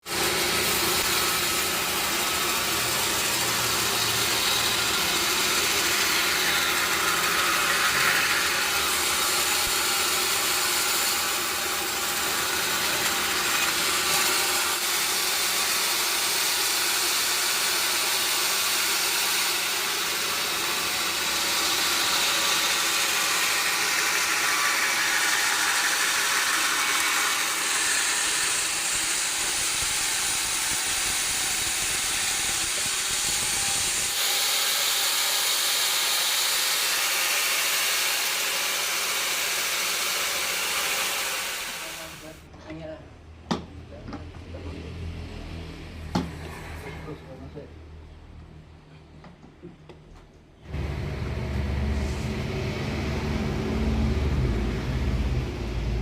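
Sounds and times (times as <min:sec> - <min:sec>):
sawmill saw cutting wood: 0:00.0 - 0:42.4, 0:50.7 - 0:55.4
machinery hum: 0:50.7 - 0:56.0.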